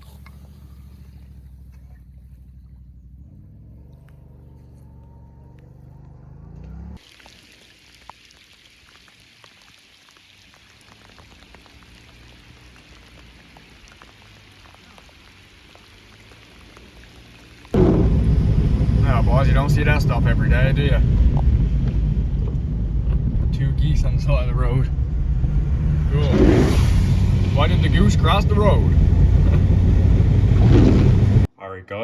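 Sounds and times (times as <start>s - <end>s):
motor revving up: 25.4s - 31.5s.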